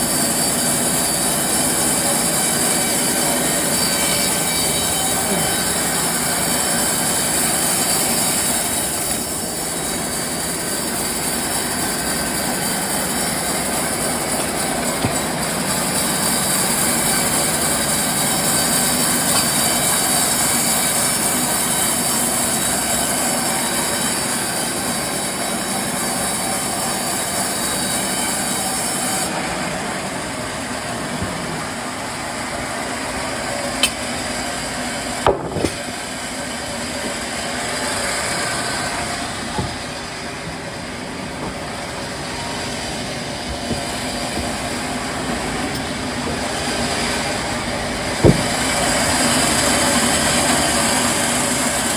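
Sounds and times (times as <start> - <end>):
sawmill machinery din: 0.0 - 51.9
sharp knocks: 35.3 - 35.9, 48.2 - 48.7.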